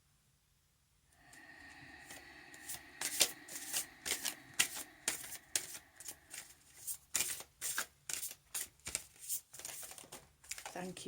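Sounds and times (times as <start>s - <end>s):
cards being shuffled: 3.1s - 10.9s.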